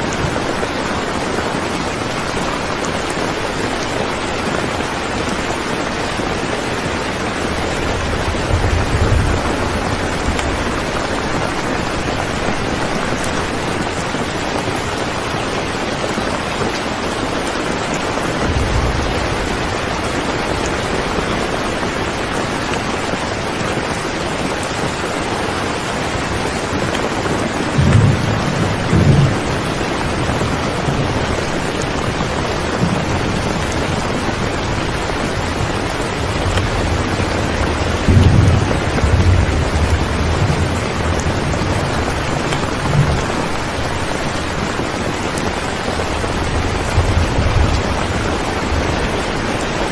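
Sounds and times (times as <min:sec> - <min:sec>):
steady rain falling: 0:00.0 - 0:49.9
low thunder rumbles: 0:04.8 - 0:14.9, 0:18.1 - 0:24.2, 0:25.3 - 0:44.9, 0:45.9 - 0:49.8.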